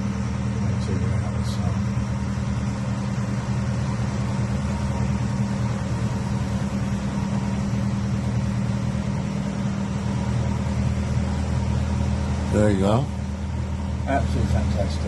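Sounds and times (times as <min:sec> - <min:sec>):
motor boat engine droning: 0:00.0 - 0:15.0.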